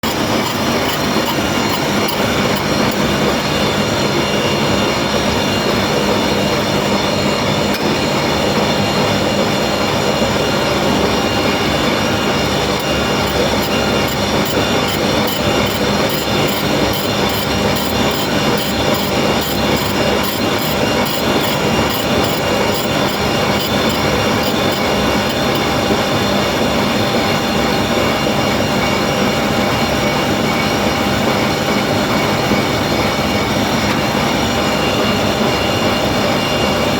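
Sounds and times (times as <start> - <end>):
grinding machine running: 0.0 - 36.9
steady high tones: 10.6 - 26.6.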